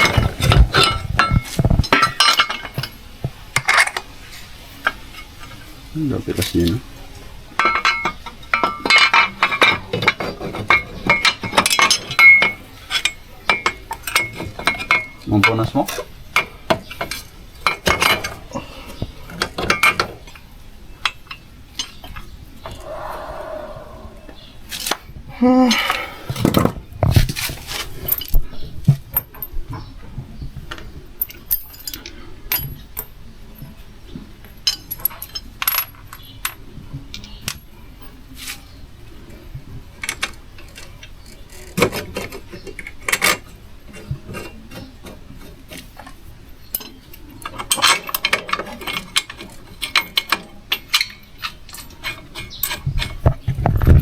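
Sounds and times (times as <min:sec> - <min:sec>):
metal tools clinking on metal: 0:00.0 - 0:03.0, 0:07.6 - 0:18.6.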